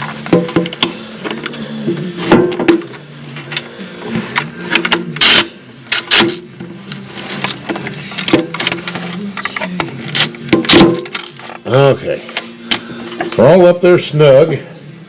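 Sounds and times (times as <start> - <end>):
hand ratchet clicking: 4.7 - 6.4.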